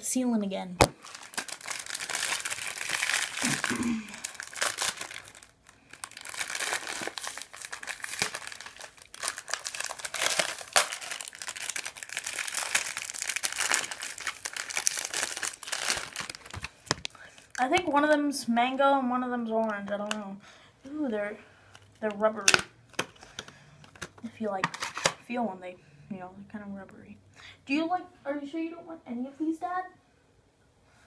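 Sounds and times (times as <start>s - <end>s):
candy wrapper crinkling: 0.9s - 18.0s.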